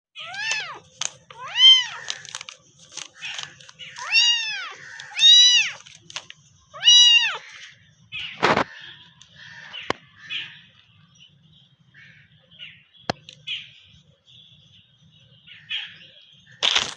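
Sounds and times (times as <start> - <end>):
cat meowing: 0.2 - 2.4, 3.2 - 5.8, 6.7 - 7.7.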